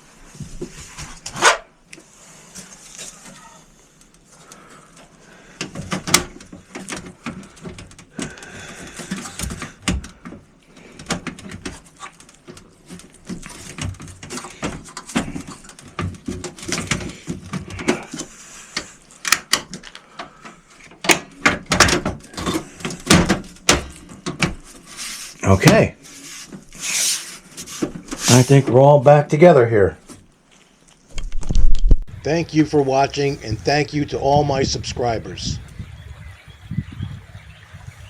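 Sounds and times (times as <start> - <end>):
computer case clicks and scrapes: 5.6 - 28.6.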